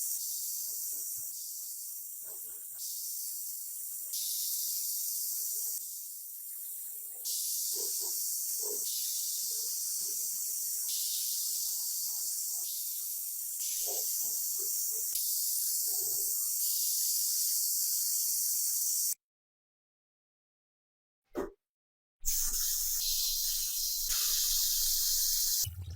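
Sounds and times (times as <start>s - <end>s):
high spraying hiss: 22.3s - 25.6s.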